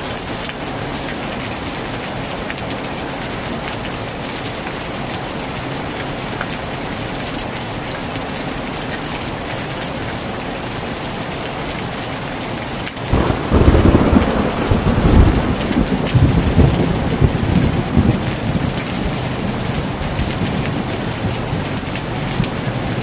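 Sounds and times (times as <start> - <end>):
heavy rain falling: 0.0 - 23.0
thunder clap and rumble: 13.1 - 23.0.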